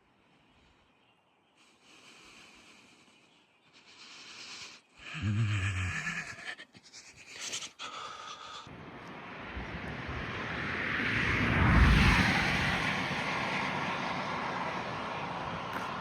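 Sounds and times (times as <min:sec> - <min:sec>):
vehicle approaching on road: 0:08.7 - 0:16.0.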